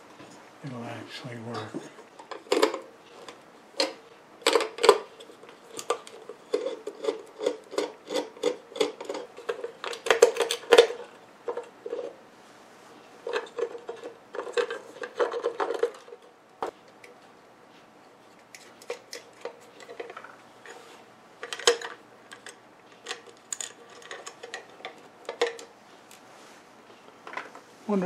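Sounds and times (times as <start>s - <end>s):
metal tools clicking and scraping: 1.6s - 12.2s.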